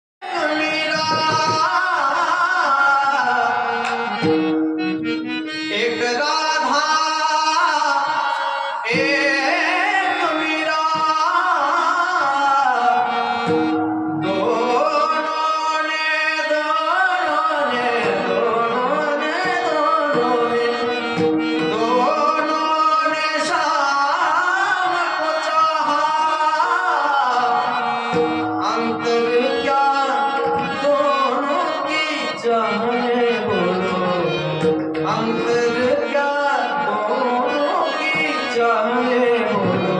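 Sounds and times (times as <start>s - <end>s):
harmonium: 0.2s - 39.9s
person singing devotional song: 0.2s - 39.9s
tabla: 0.2s - 39.9s.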